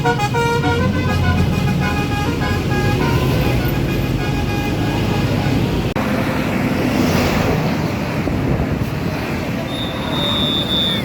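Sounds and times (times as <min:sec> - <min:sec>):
bus musical horn: 0:00.0 - 0:05.9
vehicle noise rushing: 0:00.0 - 0:11.0
wind on microphone: 0:07.5 - 0:09.7.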